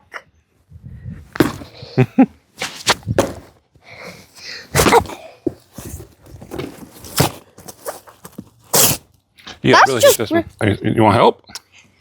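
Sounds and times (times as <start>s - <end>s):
pumpkin being smashed: 1.4s - 1.7s, 2.6s - 3.5s, 4.8s - 5.2s.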